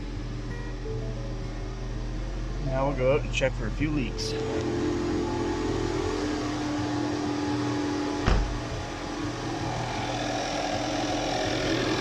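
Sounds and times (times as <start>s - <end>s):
car engine idling: 1.2s - 12.0s
loud thump: 8.2s - 8.8s.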